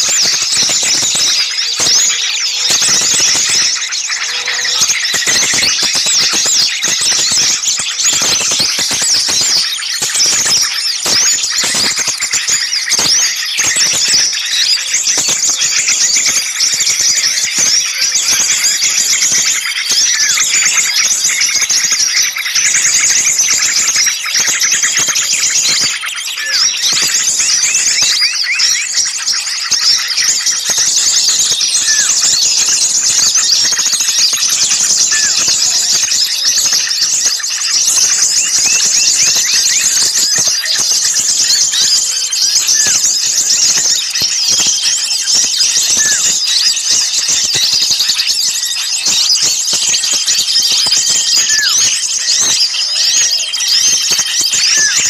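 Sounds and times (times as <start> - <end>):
songbirds chirping in chorus: 0.0 - 55.0.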